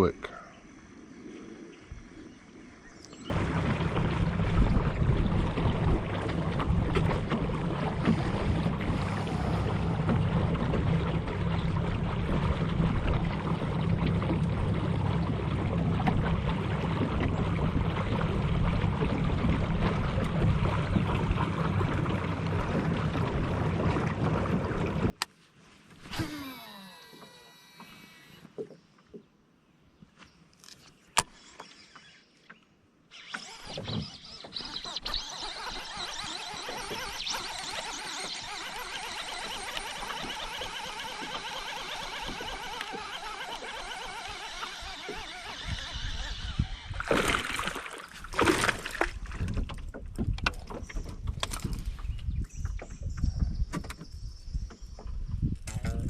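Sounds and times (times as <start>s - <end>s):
boat motor humming: 0.0s - 25.2s, 26.1s - 29.2s, 33.1s - 54.1s
sharp clicks: 33.2s - 46.6s.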